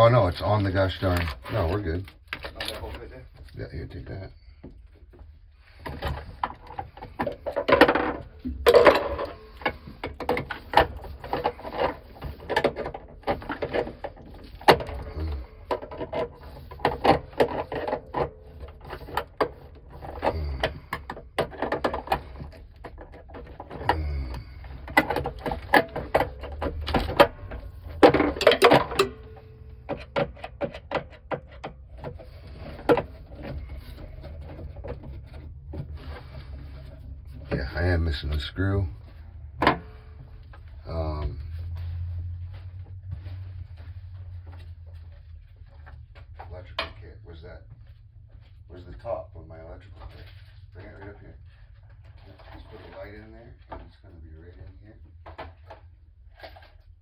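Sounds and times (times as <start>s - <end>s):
metal hardware clinking: 24.4s - 31.6s.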